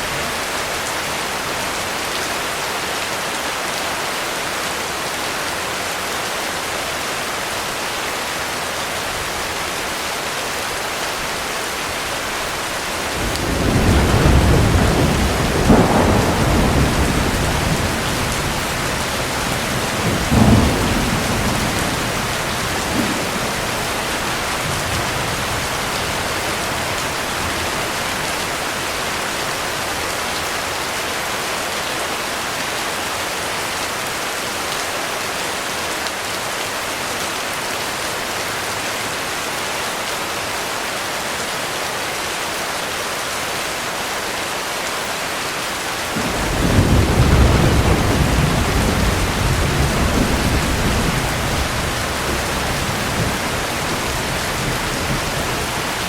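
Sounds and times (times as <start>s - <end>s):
heavy rain falling: 0.0s - 56.0s
thunder rumbling: 13.1s - 29.2s, 46.2s - 56.0s.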